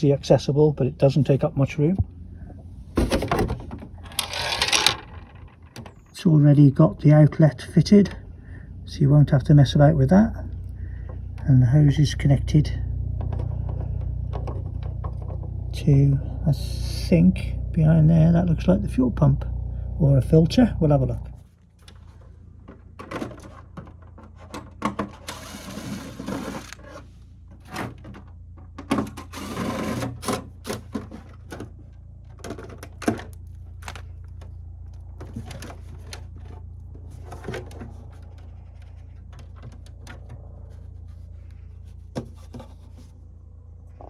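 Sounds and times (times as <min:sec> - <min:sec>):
steady low hum: 0:00.0 - 0:24.2, 0:25.3 - 0:44.0
clicks taps and rattles: 0:30.2 - 0:43.0.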